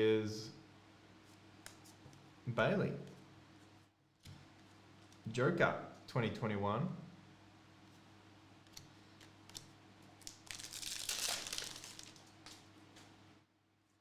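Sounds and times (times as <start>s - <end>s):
trading cards and wrappers rustling: 10.2s - 12.7s.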